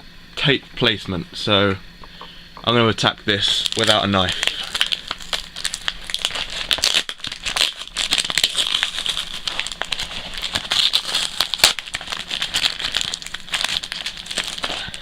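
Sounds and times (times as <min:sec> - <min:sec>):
packaging and tape crinkling: 0:03.4 - 0:15.0.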